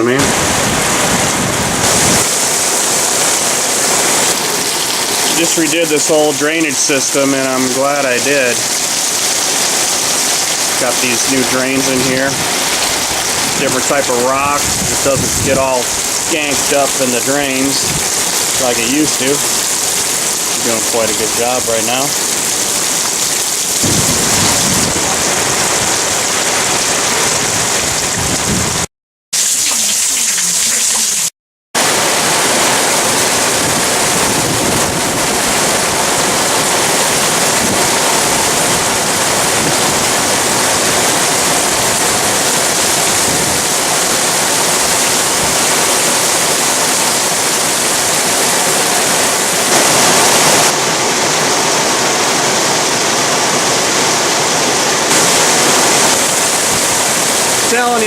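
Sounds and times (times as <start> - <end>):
heavy rain pouring: 0.0 - 58.0.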